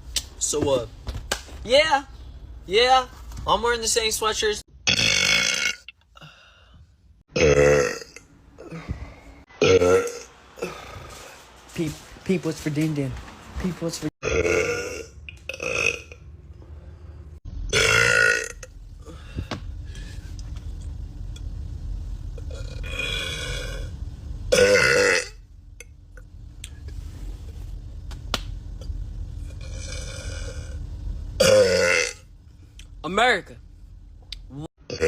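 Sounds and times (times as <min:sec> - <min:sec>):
man burping: 0:04.8 - 0:06.4, 0:07.3 - 0:08.9, 0:09.6 - 0:11.2, 0:14.2 - 0:16.2, 0:17.7 - 0:18.7, 0:22.4 - 0:23.9, 0:24.5 - 0:25.4, 0:29.6 - 0:30.8, 0:31.4 - 0:32.2, 0:34.8 - 0:35.0.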